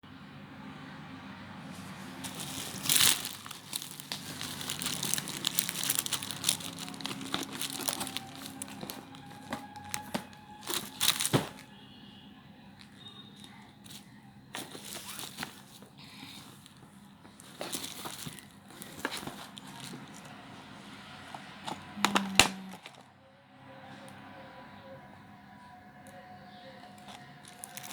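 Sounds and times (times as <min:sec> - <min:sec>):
packaging crinkling and tearing: 0:01.9 - 0:11.7, 0:14.6 - 0:15.8, 0:17.4 - 0:20.4, 0:26.9 - 0:27.9.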